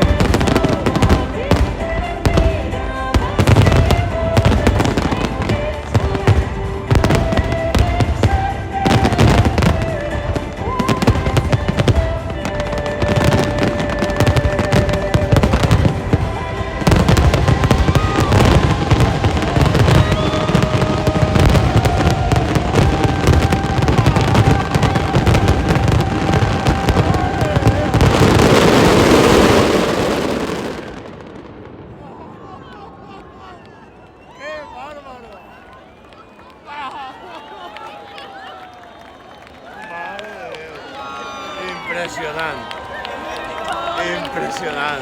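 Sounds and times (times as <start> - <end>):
music playing: 0.0 - 31.3
fireworks bangs and crackling: 0.0 - 32.7.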